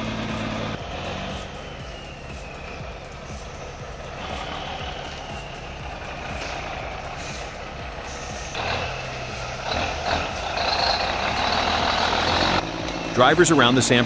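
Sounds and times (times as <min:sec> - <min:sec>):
diesel truck engine running: 0:00.0 - 0:14.0.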